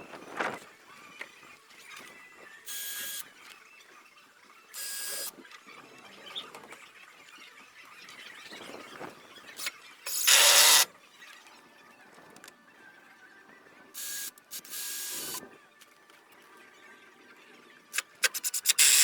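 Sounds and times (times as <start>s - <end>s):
cordless drill driving screws: 9.6s - 10.9s, 18.0s - 19.0s.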